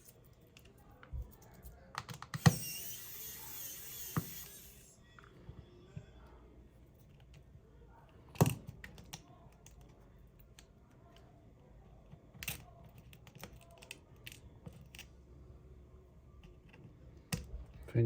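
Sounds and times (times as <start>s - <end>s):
tools and tiny parts clicking: 12.0s - 15.1s.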